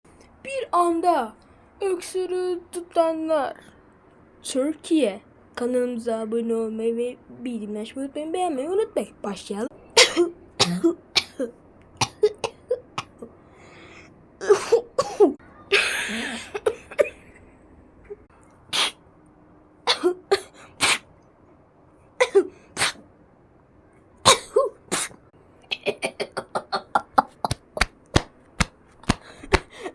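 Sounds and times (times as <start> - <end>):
people coughing: 10.0 - 11.4, 14.4 - 17.3, 24.3 - 27.6.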